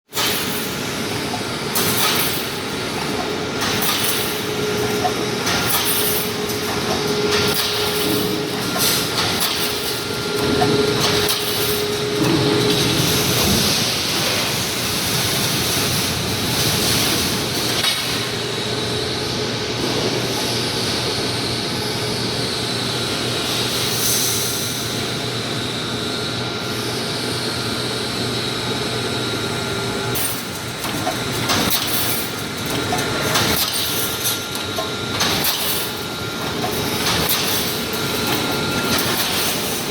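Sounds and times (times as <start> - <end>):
machine knocks and clanks: 0.1 - 18.3, 30.2 - 39.9
welding machine din and hum: 0.1 - 39.9.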